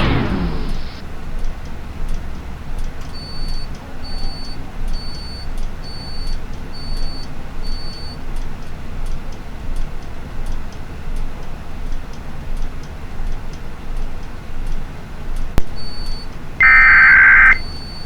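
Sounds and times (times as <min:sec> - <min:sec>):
low rumble: 0:00.0 - 0:01.0
high-pitched electronic beeps: 0:15.6 - 0:18.0.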